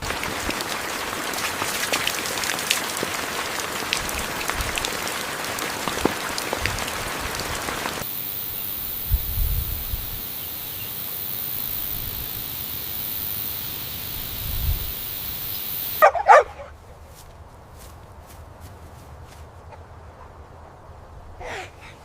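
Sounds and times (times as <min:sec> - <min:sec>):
steady hiss: 0:08.0 - 0:16.0
dog barking: 0:16.0 - 0:16.8.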